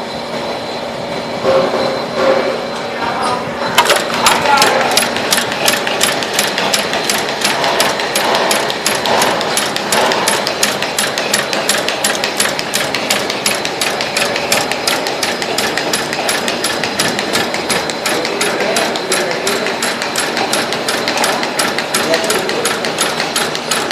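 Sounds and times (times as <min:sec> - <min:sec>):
paper cutting machine clacking: 0:03.8 - 0:23.9.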